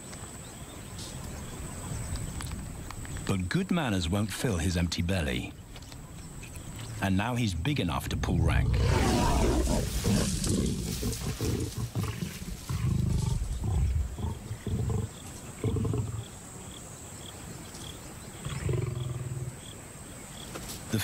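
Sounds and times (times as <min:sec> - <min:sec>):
lions growling and snarling: 0:08.3 - 0:16.4, 0:18.4 - 0:19.6.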